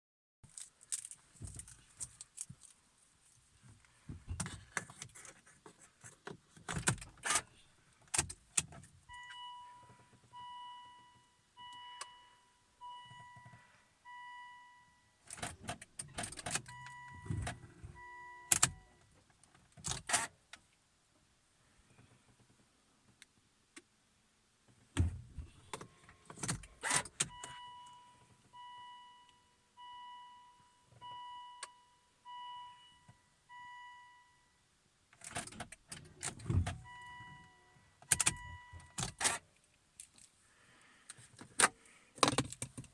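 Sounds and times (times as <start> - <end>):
keys jangling and clicking: 0.5 - 2.8
dashboard warning chime beeping: 9.1 - 15.2, 16.6 - 19.0, 25.4 - 34.6, 36.5 - 39.3.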